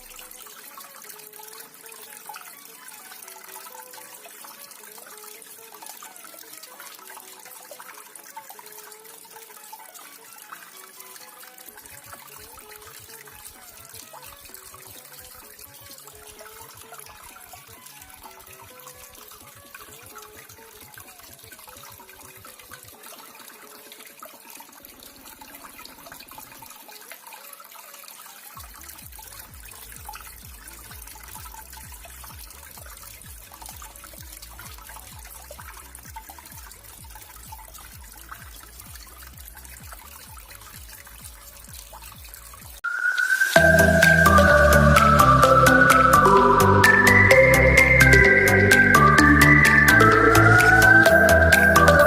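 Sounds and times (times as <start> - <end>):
electronic music: 0.0 - 0.7, 42.8 - 52.0
water trickling down waterfall: 0.0 - 52.0.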